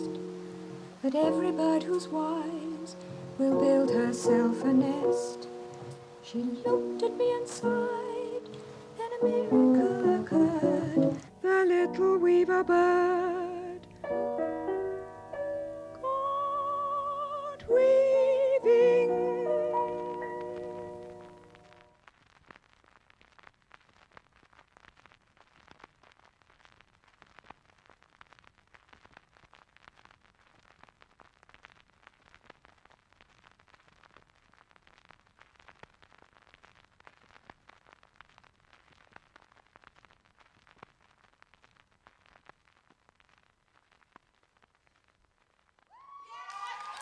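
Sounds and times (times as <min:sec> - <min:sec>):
faint audience applause: 0:45.9 - 0:47.0.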